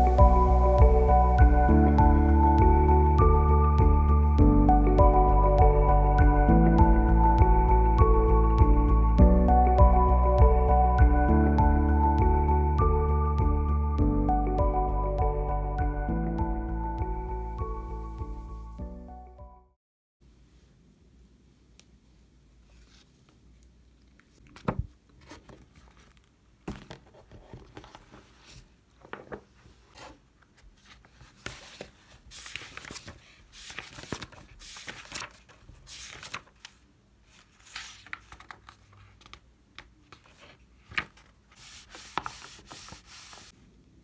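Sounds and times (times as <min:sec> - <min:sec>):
crinkly packaging rustling and tearing: 0:30.9 - 0:39.4.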